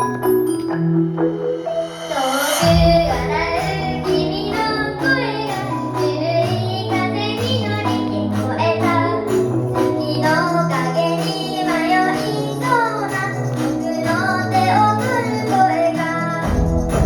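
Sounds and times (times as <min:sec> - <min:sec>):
backing track: 0:00.0 - 0:17.0
woman singing pop song: 0:01.9 - 0:17.0
heavy low bass hit: 0:02.6 - 0:04.8.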